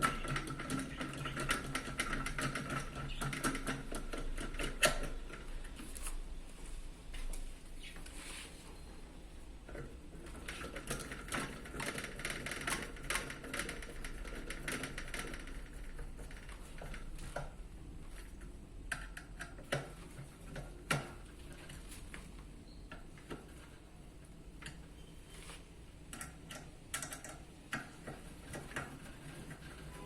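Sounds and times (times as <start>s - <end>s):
small plastic parts clicking and rattling: 0.0s - 5.8s, 9.6s - 22.3s.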